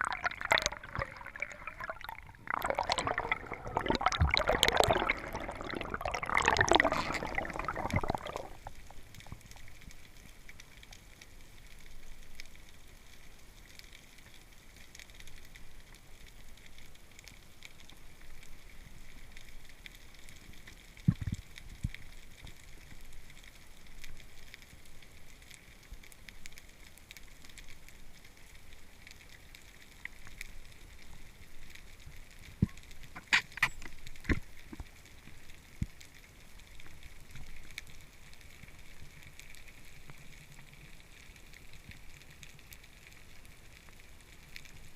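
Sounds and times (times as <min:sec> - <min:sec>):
bubbling: 0:00.0 - 0:09.9
underwater crackling hiss: 0:00.0 - 0:44.9.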